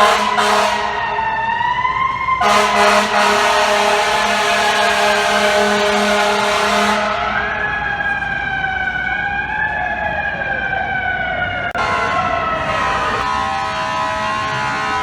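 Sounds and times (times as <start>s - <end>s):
fire truck air horn: 0.0s - 1.4s, 2.4s - 7.8s, 11.7s - 15.0s
siren wail: 0.0s - 15.0s.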